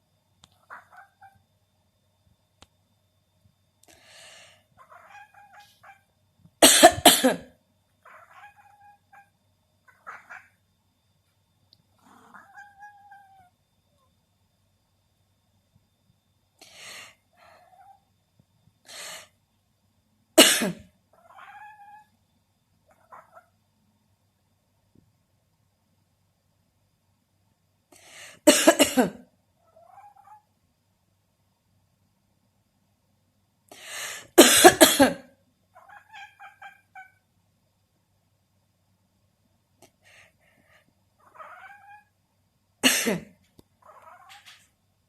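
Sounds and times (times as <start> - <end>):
small pet coughing: 6.6 - 9.2, 20.4 - 20.9, 28.4 - 29.2, 34.2 - 37.1, 42.8 - 43.4.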